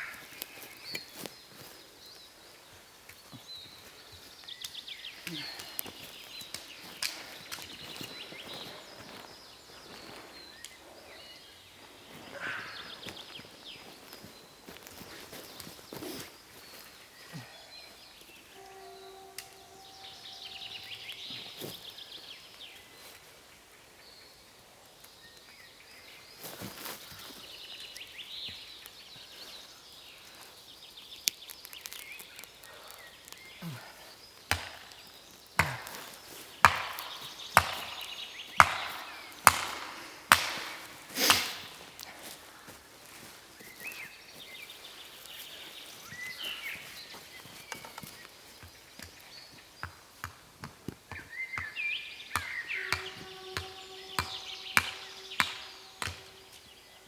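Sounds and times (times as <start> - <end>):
rustling: 28.8 - 48.5
axe strikes into wood: 34.5 - 35.0, 35.6 - 41.8, 54.2 - 56.3.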